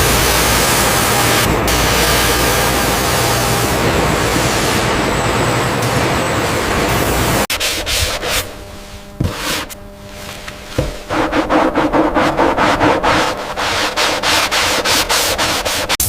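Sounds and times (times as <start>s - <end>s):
sandpaper rubbing on wood: 7.5s - 8.6s, 9.2s - 9.8s, 10.6s - 16.0s.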